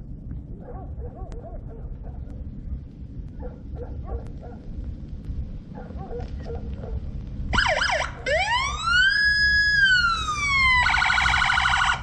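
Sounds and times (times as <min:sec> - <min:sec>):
police siren yelping and wailing: 0:07.6 - 0:12.0.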